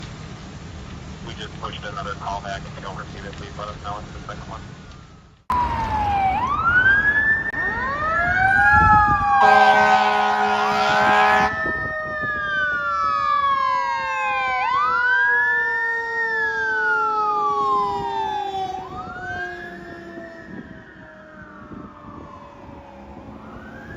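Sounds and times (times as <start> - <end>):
fire engine sirens wailing: 1.1 - 23.9
lower siren tone falling: 4.8 - 23.9
fire engine air horn blast: 9.4 - 11.9.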